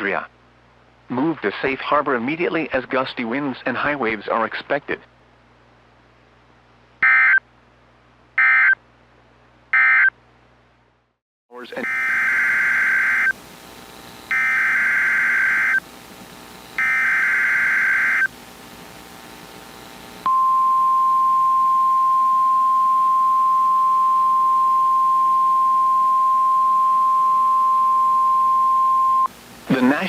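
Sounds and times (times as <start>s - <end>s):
buzzing digital data tones: 11.8s - 13.4s, 14.3s - 15.8s, 16.8s - 18.3s.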